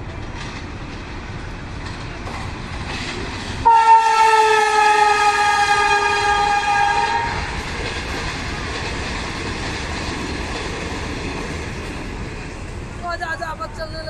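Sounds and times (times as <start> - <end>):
train wheels rumbling on track: 0.0 - 14.0
long train horn blast: 3.6 - 7.6.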